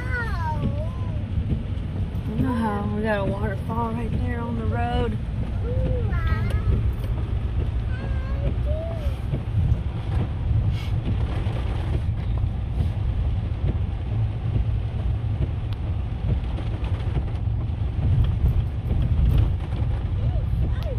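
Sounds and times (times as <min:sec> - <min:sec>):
car rumbling on the move: 0:00.0 - 0:20.9
wind buffeting microphone: 0:00.0 - 0:20.9.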